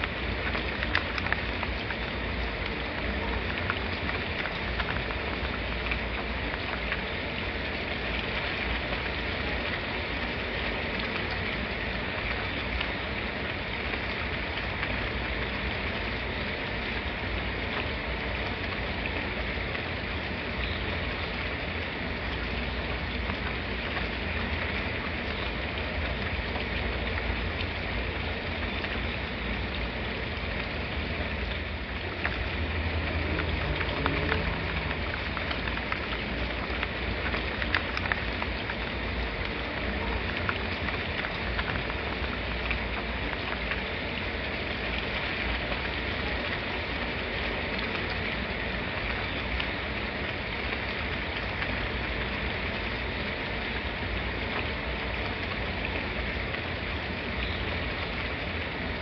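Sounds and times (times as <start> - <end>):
steady rainfall: 0.0 - 59.0.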